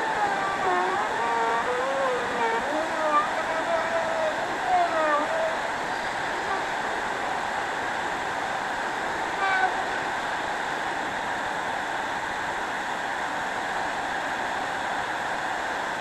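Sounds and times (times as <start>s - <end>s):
short high squeal: 0.0s - 6.7s
vacuum cleaner running: 0.0s - 6.7s.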